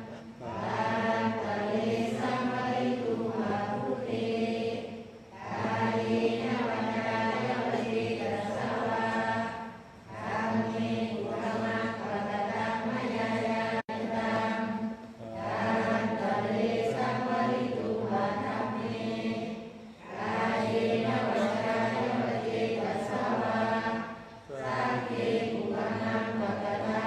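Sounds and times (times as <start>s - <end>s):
group chanting in unison: 0.0s - 27.0s.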